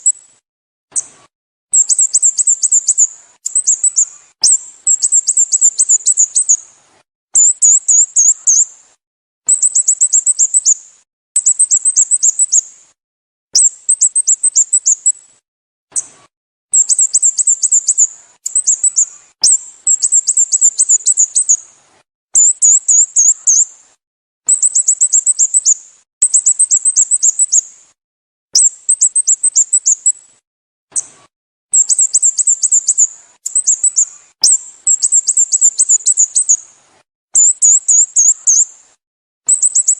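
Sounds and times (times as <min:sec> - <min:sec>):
bird calling in high chirps: 0:01.7 - 0:06.6, 0:07.4 - 0:08.7, 0:09.5 - 0:10.8, 0:11.4 - 0:12.7, 0:13.6 - 0:15.2, 0:16.7 - 0:21.6, 0:22.4 - 0:23.7, 0:24.5 - 0:27.7, 0:28.6 - 0:30.2, 0:31.7 - 0:36.6, 0:37.4 - 0:38.8, 0:39.5 - 0:39.9.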